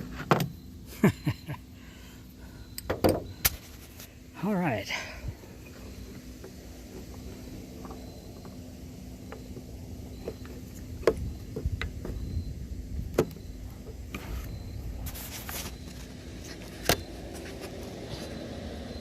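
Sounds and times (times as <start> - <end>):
steady low hum: 0.0 - 19.0
scraping rustle: 14.2 - 18.4.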